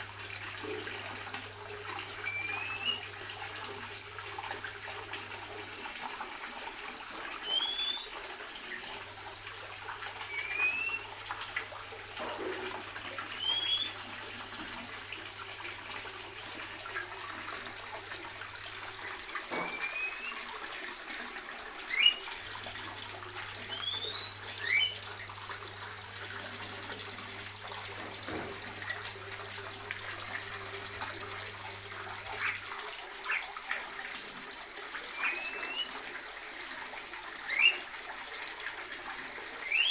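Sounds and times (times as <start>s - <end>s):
birds chirping: 2.3s - 3.0s, 10.3s - 11.0s, 13.3s - 14.0s, 19.0s - 20.5s, 21.9s - 22.3s, 23.6s - 25.0s, 35.2s - 35.9s.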